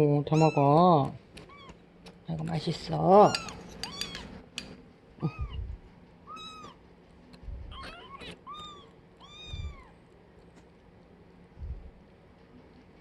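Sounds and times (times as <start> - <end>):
kittens mewing: 0.3 - 0.7, 5.2 - 6.8, 7.7 - 10.0
soft low bumps: 5.3 - 5.9, 11.6 - 12.0.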